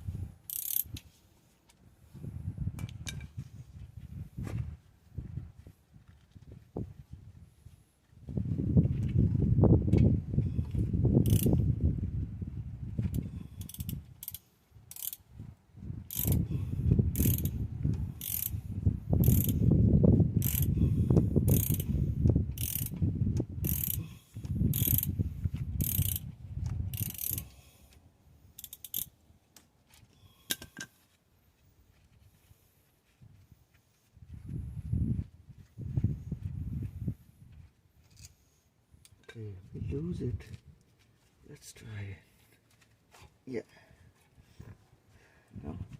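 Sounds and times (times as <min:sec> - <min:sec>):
ratchet wrench pawl rattling: 0:00.5 - 0:01.0, 0:11.2 - 0:11.6, 0:13.6 - 0:15.2, 0:16.1 - 0:16.4, 0:17.1 - 0:17.6, 0:18.2 - 0:18.6, 0:19.2 - 0:19.6, 0:20.4 - 0:20.8, 0:21.5 - 0:22.0, 0:22.6 - 0:22.9, 0:23.6 - 0:24.0, 0:24.7 - 0:25.1, 0:25.8 - 0:26.2, 0:26.9 - 0:27.5, 0:28.6 - 0:29.1.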